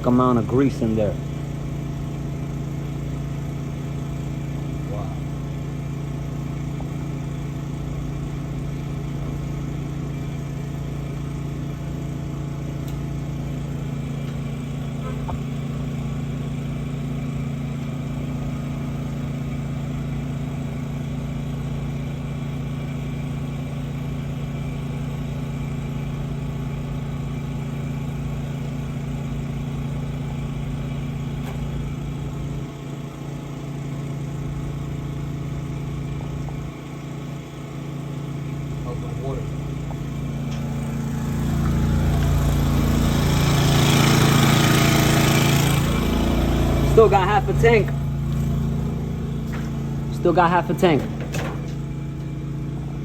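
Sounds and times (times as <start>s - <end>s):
sewer jetter engine droning: 0.0s - 53.0s.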